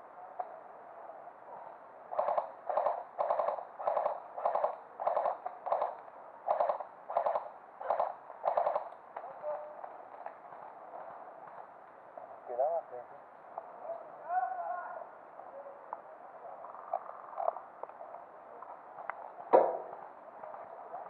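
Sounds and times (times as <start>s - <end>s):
airsoft gun full-auto bursts: 2.1s - 8.9s.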